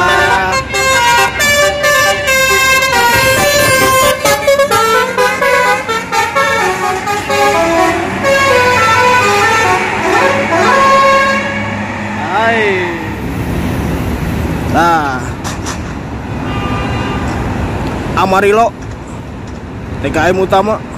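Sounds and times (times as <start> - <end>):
bus air horn melody: 0.0 - 12.0, 16.4 - 17.4
bus engine humming: 0.0 - 18.2.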